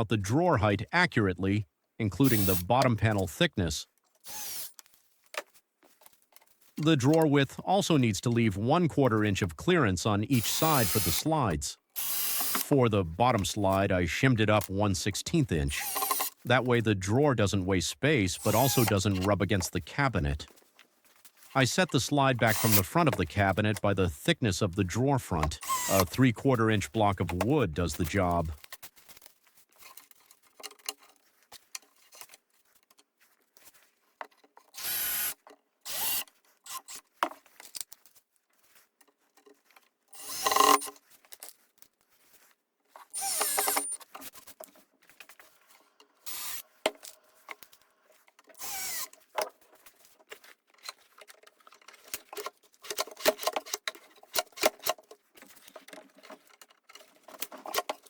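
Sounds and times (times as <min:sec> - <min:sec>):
cordless drill driving screws: 0:02.2 - 0:02.7, 0:04.2 - 0:04.8, 0:10.4 - 0:11.3, 0:12.0 - 0:12.7, 0:15.8 - 0:16.5, 0:18.4 - 0:19.3, 0:22.5 - 0:22.8, 0:25.6 - 0:26.1, 0:34.7 - 0:37.0, 0:40.1 - 0:41.0, 0:43.1 - 0:44.2, 0:46.2 - 0:47.0, 0:48.5 - 0:49.2.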